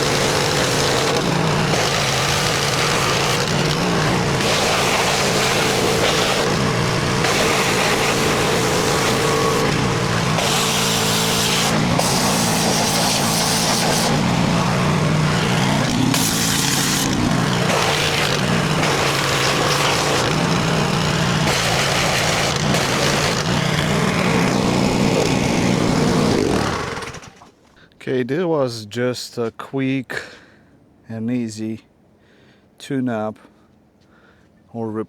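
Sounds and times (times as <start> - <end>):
lawn mower engine running: 0.0 - 27.5.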